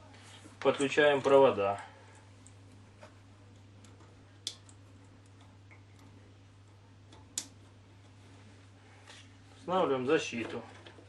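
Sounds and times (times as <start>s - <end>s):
faint low hum: 0.0s - 11.0s
wire connectors clicking onto terminals: 0.6s - 8.2s.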